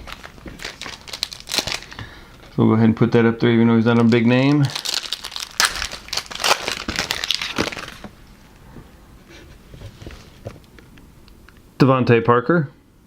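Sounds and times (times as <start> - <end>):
cards rustling: 0.0 - 2.1, 3.9 - 8.2
foil wrapper crinkling: 0.0 - 2.4, 3.8 - 8.2.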